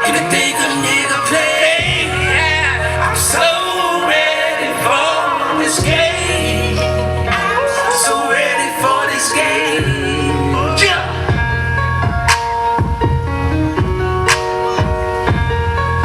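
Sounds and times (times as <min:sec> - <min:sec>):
man singing: 0:00.0 - 0:11.8
sustained bass notes: 0:01.7 - 0:03.6, 0:04.9 - 0:08.1, 0:09.8 - 0:16.0.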